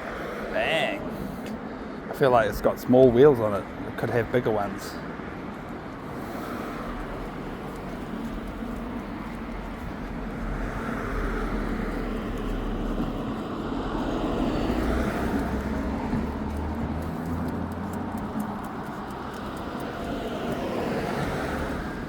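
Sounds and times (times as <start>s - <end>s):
vehicle passing by: 6.1s - 22.0s.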